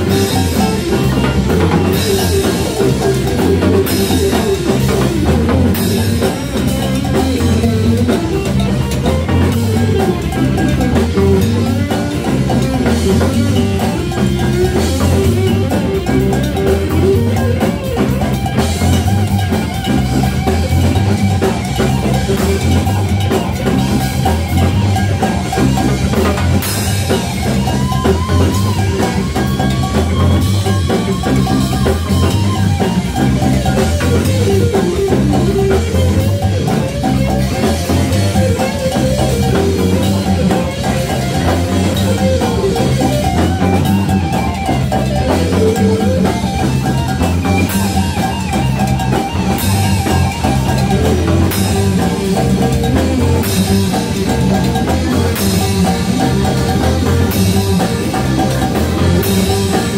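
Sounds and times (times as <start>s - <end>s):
latin rock band playing: 0.0s - 59.9s.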